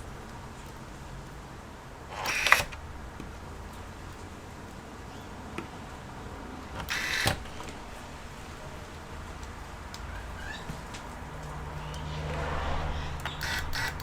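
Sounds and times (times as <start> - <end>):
electric screwdriver whirring: 2.1 - 2.8, 6.8 - 7.7, 13.2 - 14.0.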